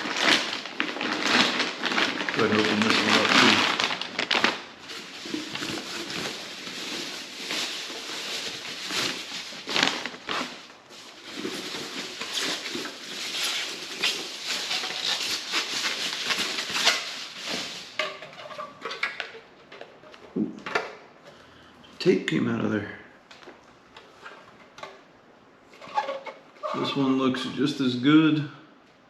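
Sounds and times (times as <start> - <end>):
packing tape pulled off: 0.0 - 19.3
packing material rustling: 0.0 - 20.3.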